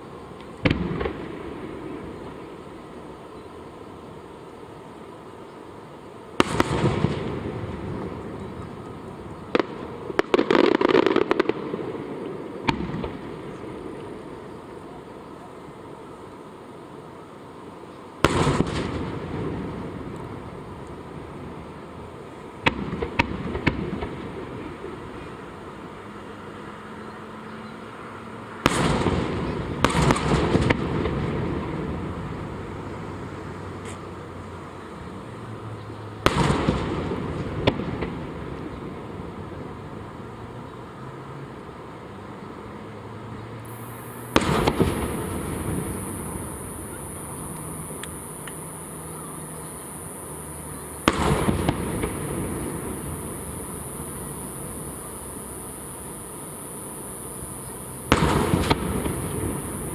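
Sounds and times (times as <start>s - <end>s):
crackling fireworks reports: 0.0s - 4.2s, 6.3s - 15.9s, 18.2s - 26.2s, 28.6s - 40.6s, 43.6s - 59.9s
fireworks bursting: 6.4s - 14.4s, 18.2s - 25.8s, 28.6s - 32.7s, 43.7s - 59.9s
echoing rumble: 43.7s - 59.9s
firework boom: 43.7s - 59.9s.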